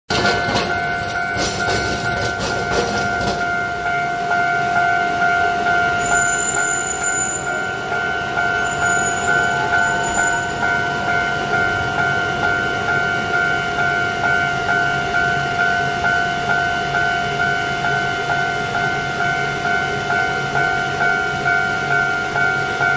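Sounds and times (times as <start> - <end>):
train wheels knocking over rail joints: 0.1 - 4.0
level-crossing alarm ringing: 0.1 - 22.9.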